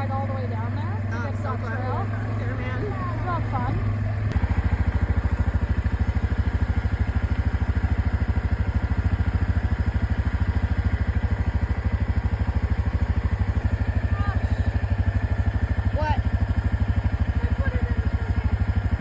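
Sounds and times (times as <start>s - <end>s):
quad bike engine idling: 0.0s - 19.0s.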